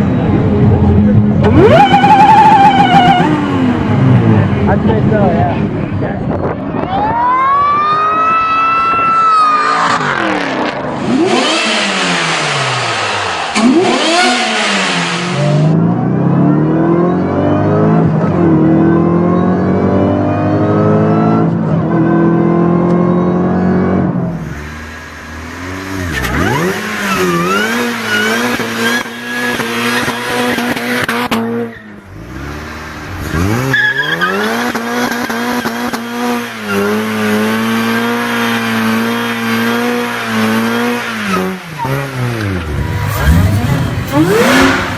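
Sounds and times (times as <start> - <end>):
supercharged car engines revving: 0.0 - 6.8, 9.4 - 44.9
supercharger whine: 35.1 - 44.9.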